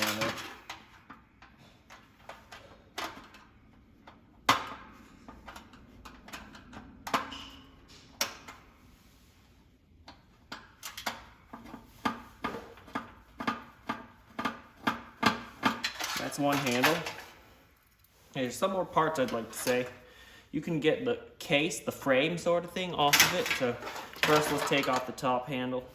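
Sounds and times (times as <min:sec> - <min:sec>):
metal parts clinking: 0:00.0 - 0:00.9, 0:15.6 - 0:18.2, 0:23.0 - 0:25.2.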